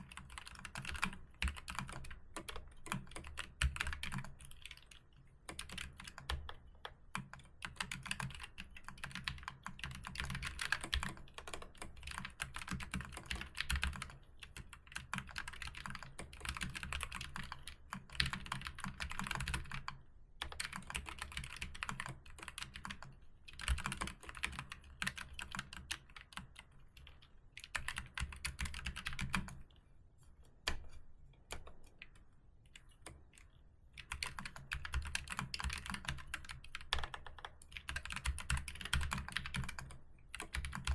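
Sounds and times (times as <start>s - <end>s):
keyboard typing clicks: 32.8s - 40.9s.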